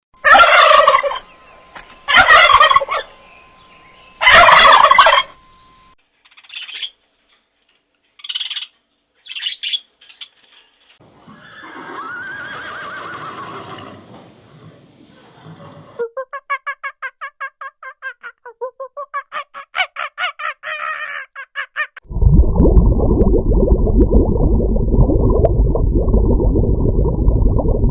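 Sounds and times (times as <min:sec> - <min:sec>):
turkey gobbling: 0:00.2 - 0:01.4, 0:02.1 - 0:03.1, 0:04.2 - 0:05.4, 0:16.2 - 0:22.0.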